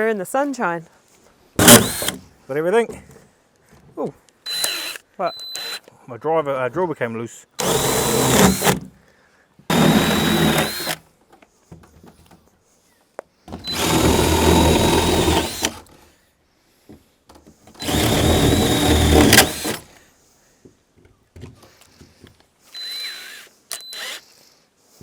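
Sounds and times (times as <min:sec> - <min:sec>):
power drill boring wood: 0:01.6 - 0:02.2, 0:04.5 - 0:05.8, 0:07.6 - 0:08.9, 0:09.7 - 0:11.0, 0:13.5 - 0:15.9, 0:17.8 - 0:19.9, 0:22.7 - 0:24.3.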